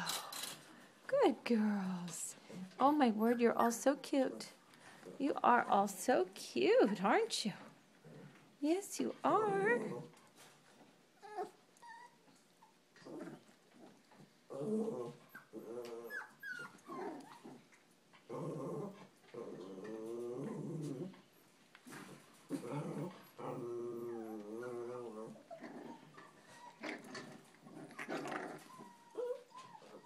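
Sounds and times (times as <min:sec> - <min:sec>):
puppies growling and whining: 0:09.3 - 0:10.2, 0:11.1 - 0:30.0.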